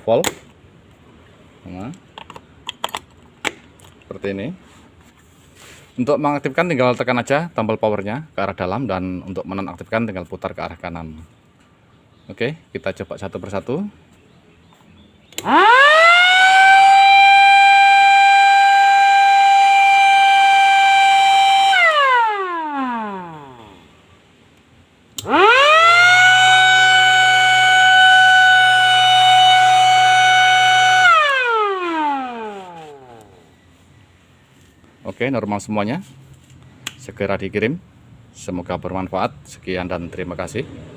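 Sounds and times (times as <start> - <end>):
electric siren wailing: 15.4 - 24.1, 25.2 - 34.8
siren switch click: 31.2 - 33.5.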